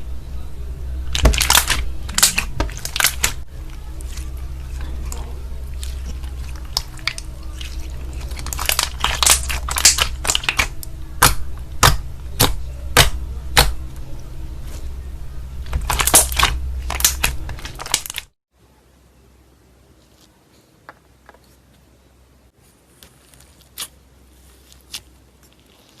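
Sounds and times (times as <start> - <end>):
slime crackling and popping: 1.1 - 13.8, 15.6 - 18.3.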